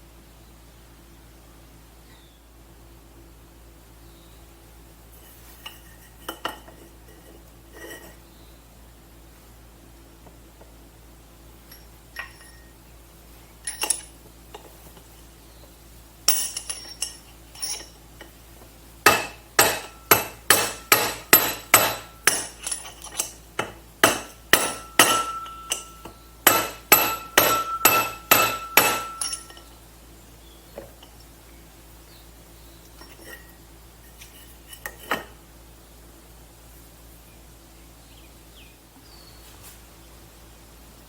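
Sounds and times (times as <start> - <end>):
hammer striking metal punch: 19.0 - 29.7.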